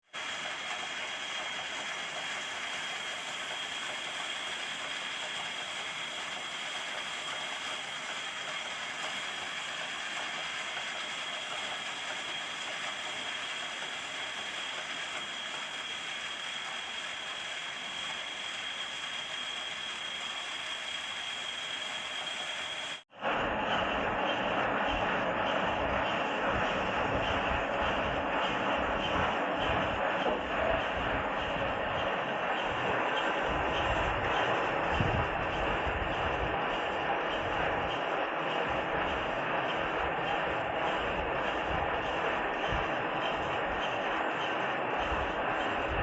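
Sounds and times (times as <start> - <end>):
lathe cutting hiss: 0.2 - 23.0
high-pitched whine: 0.2 - 46.0.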